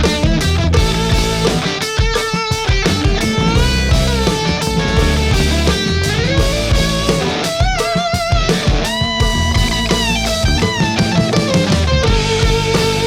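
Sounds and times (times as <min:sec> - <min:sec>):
rock music with electric guitar: 0:00.0 - 0:13.0.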